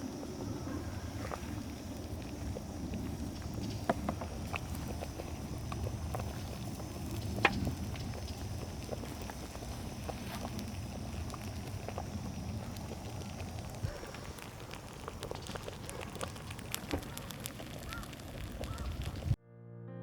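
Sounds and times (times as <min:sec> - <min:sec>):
campfire crackling: 0:00.0 - 0:19.4
piano music: 0:19.4 - 0:20.0.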